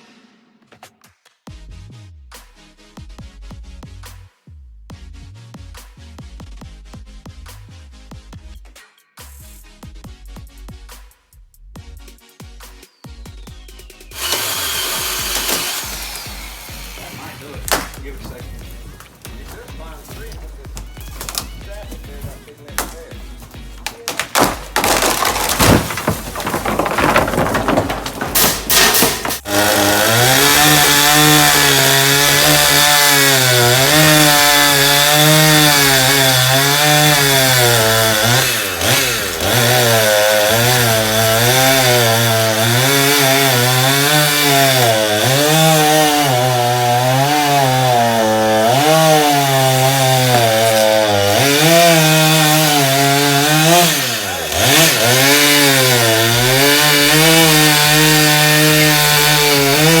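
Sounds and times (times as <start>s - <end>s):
chainsaw cutting wood: 14.1s - 60.0s.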